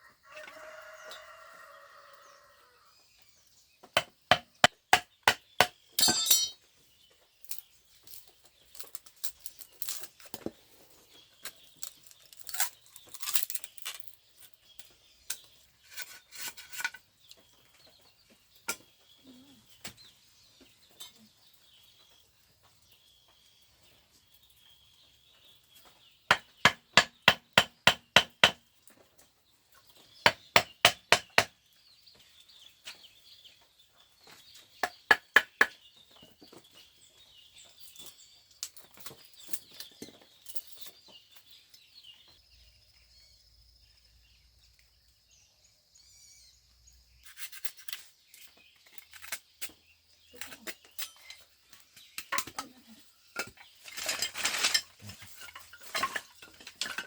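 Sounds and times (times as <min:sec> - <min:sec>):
hammer striking bamboo: 0:04.0 - 0:06.6, 0:26.3 - 0:28.6, 0:30.3 - 0:31.5, 0:34.8 - 0:35.8.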